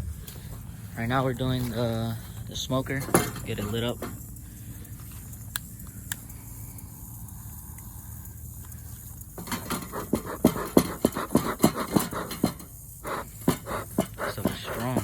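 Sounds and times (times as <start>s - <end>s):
smoker bellows puffing air: 0.0s - 15.0s
small clicks: 5.1s - 9.3s.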